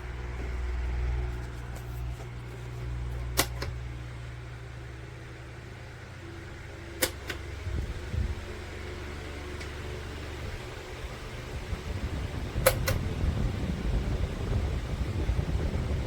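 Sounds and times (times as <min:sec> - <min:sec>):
electric fan running: 0:00.0 - 0:16.0
sharp clicks: 0:03.3 - 0:03.8, 0:07.0 - 0:07.5.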